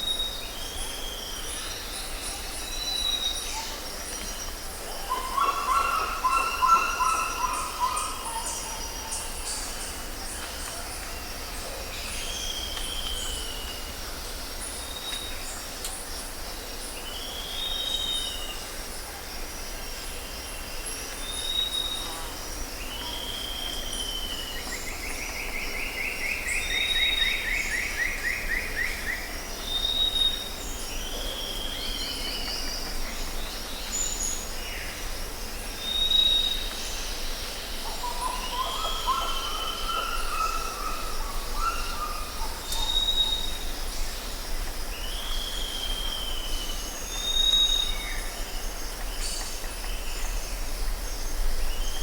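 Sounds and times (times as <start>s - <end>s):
insects droning: 0.0s - 52.0s
wild birds calling: 5.1s - 9.3s.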